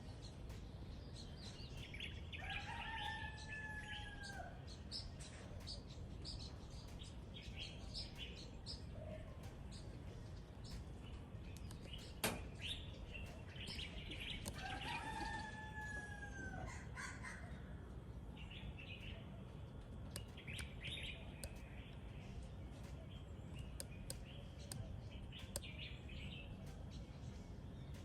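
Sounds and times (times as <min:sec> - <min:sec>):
small birds chirping: 0:00.0 - 0:28.0
rooster crowing: 0:02.4 - 0:04.6, 0:14.6 - 0:17.5.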